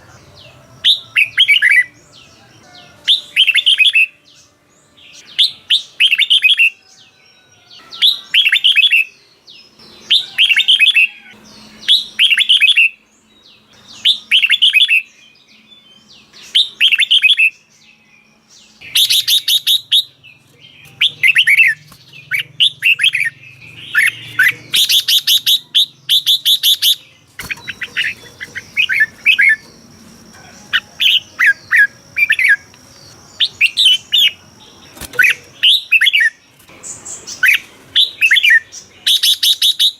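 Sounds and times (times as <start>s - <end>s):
bird singing whistled phrases: 3.0s - 4.2s, 5.2s - 6.9s, 10.1s - 13.0s, 14.0s - 15.1s, 16.4s - 18.0s, 18.8s - 29.7s, 37.3s - 39.9s.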